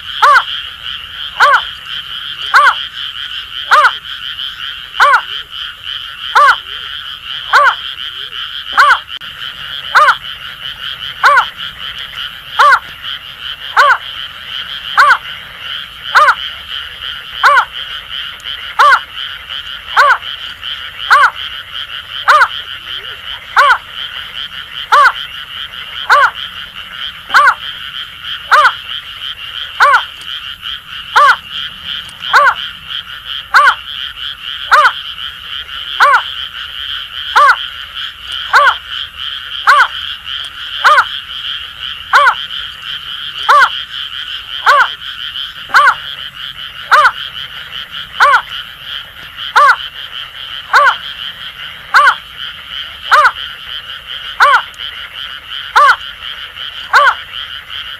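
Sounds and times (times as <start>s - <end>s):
frog chorus: 0.0s - 57.9s
bird hooting call: 11.2s - 11.5s, 12.6s - 12.9s, 29.8s - 30.2s, 31.1s - 32.6s, 33.5s - 33.8s.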